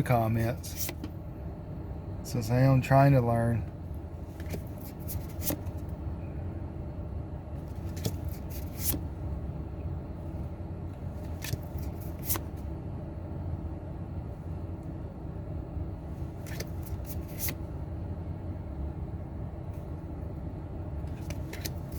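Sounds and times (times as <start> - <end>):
low background hum: 0.0 - 21.9
cards snapping and rustling: 0.7 - 1.1, 4.3 - 5.8, 7.7 - 9.1, 11.2 - 12.5, 16.4 - 17.6, 21.1 - 21.9.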